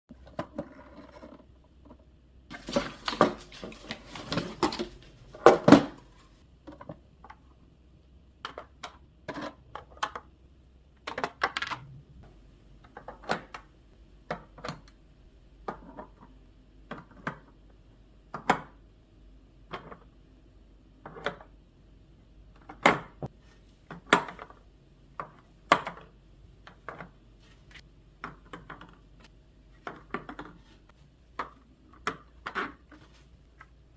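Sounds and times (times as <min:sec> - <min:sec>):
plastic clattering: 0:02.5 - 0:06.1.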